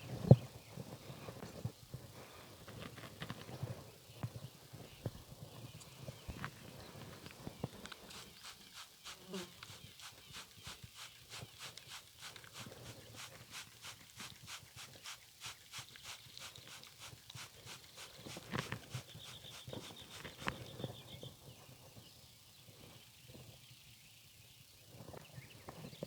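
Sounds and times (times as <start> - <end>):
spray bottle squirting: 8.0 - 20.6.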